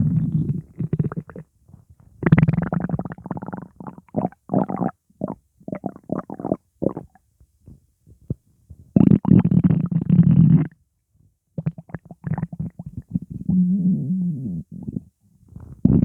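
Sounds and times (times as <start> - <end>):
stomach gurgling: 0.0 - 7.2, 11.6 - 16.0.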